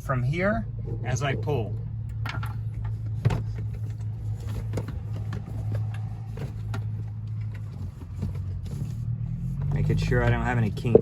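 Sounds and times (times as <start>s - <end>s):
cable knocks and rustles: 2.2s - 9.0s.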